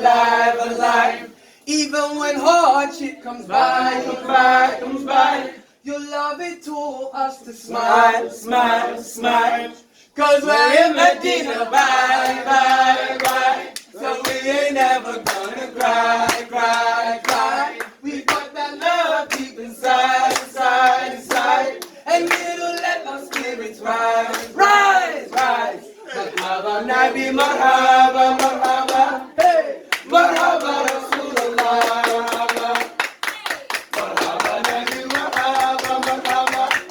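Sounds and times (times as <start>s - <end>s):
a cappella chorus singing: 0.0s - 33.2s, 33.8s - 36.9s
hand claps: 11.7s - 23.6s, 24.3s - 24.7s, 25.3s - 25.6s, 28.3s - 36.9s.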